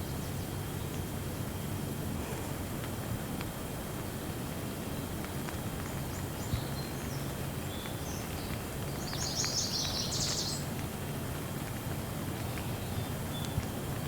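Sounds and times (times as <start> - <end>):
steady rain: 0.5 - 14.0
raindrops ticking: 3.4 - 14.0.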